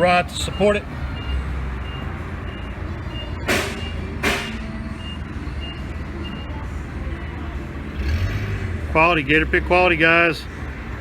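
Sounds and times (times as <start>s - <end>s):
reversing alarm beeping: 0.4s - 6.6s.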